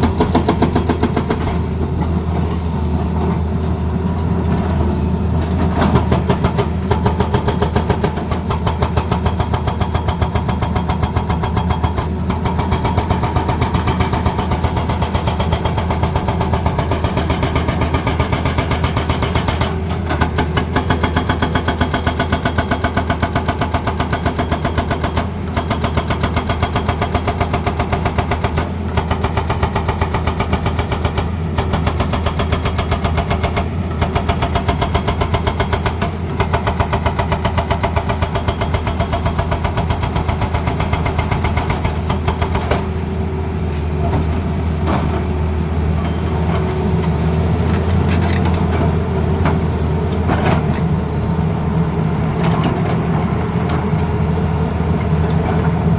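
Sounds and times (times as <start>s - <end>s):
hydraulic breaker hammering: 0.0s - 2.2s, 5.6s - 43.1s
diesel engine running: 0.0s - 55.9s.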